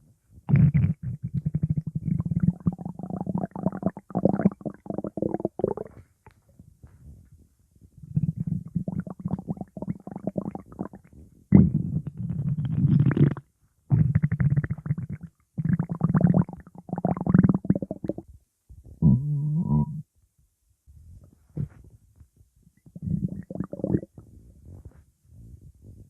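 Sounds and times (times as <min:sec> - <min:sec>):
stomach growling: 0:00.5 - 0:06.0, 0:08.0 - 0:18.3, 0:19.0 - 0:20.0, 0:22.8 - 0:24.8.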